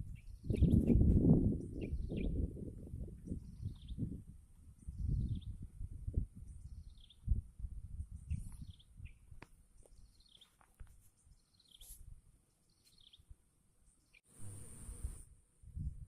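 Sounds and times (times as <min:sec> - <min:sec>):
wind rumble on microphone: 0:00.0 - 0:10.1, 0:14.4 - 0:16.0.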